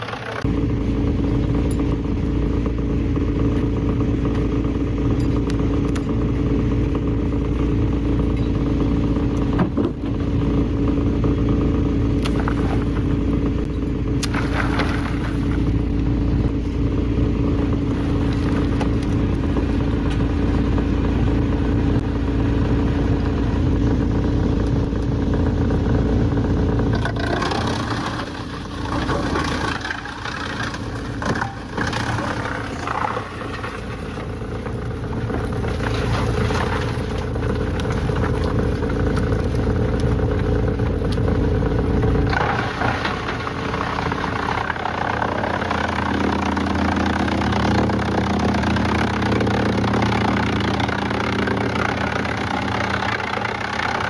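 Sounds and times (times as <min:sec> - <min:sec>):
clatter: 0:00.0 - 0:22.1, 0:23.2 - 0:54.0
heavy machinery hum and rumble: 0:00.0 - 0:54.0
rattling and scraping: 0:24.0 - 0:54.0.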